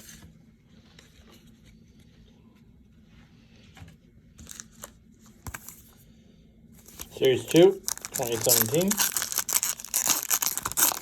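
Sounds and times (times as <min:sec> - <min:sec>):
faint trading cards handling: 0:04.4 - 0:06.0, 0:06.8 - 0:11.0
foil wrapper crinkling: 0:06.8 - 0:11.0.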